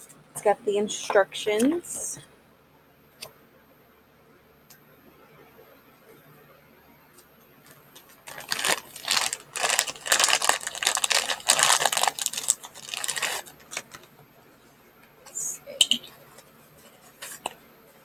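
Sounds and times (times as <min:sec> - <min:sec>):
packaging rustling and crinkling: 0:08.0 - 0:14.2, 0:16.2 - 0:17.6.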